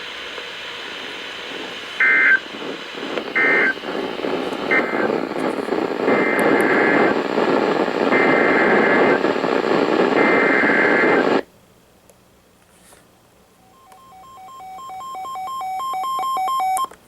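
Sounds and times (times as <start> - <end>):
radio static: 0.0 - 11.5
digital data bursts: 2.0 - 11.4.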